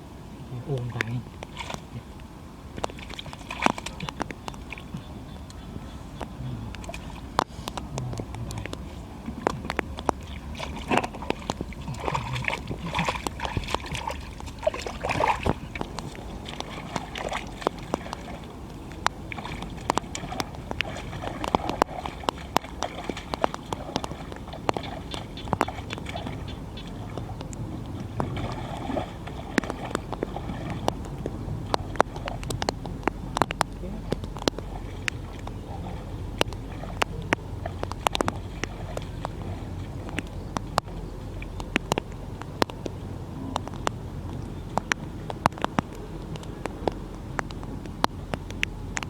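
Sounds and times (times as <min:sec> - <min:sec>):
water sloshing and splashing: 0:00.0 - 0:49.0
small sharp clicks and knocks: 0:06.2 - 0:14.7, 0:29.6 - 0:35.6, 0:36.4 - 0:49.0.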